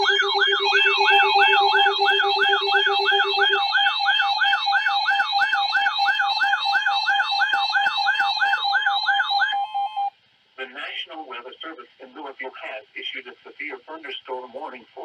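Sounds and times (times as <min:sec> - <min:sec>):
steady pulsing beep: 0:00.0 - 0:10.1
warbling electronic alert tone: 0:00.0 - 0:10.1.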